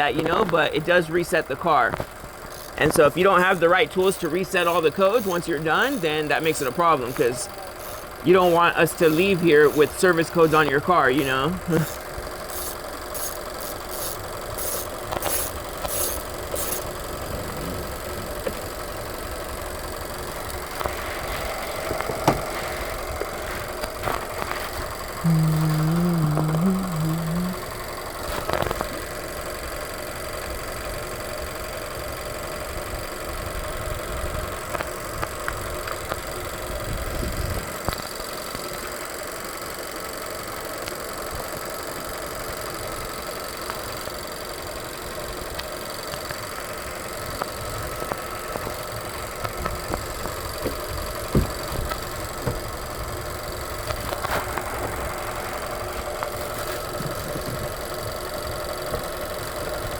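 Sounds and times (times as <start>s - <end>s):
car engine idling: 0.0s - 59.9s
sharp clicks: 0.2s - 17.0s.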